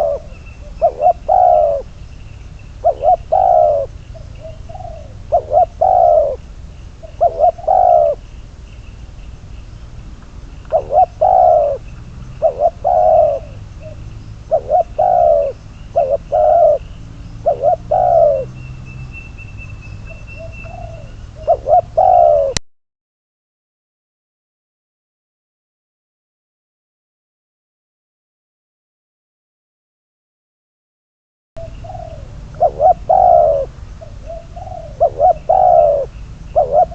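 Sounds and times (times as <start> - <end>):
dove cooing: 0.0 - 8.7, 10.4 - 22.6, 31.6 - 36.9.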